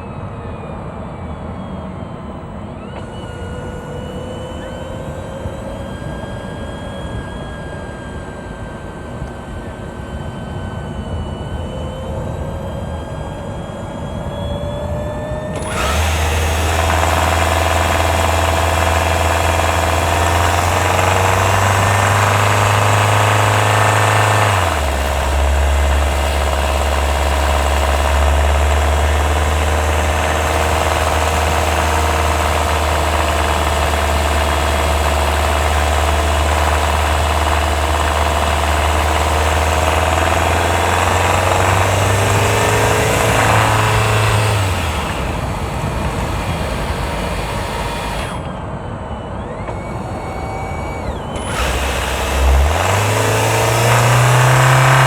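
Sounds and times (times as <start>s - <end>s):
car engine running: 15.6s - 55.0s.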